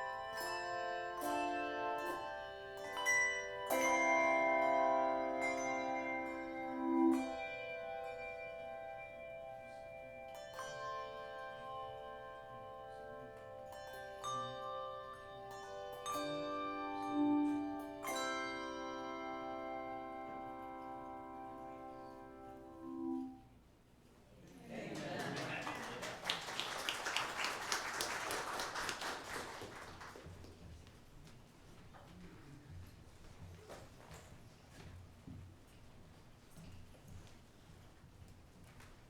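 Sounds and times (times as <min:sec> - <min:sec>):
slow instrumental chords: 0:01.1 - 0:23.5.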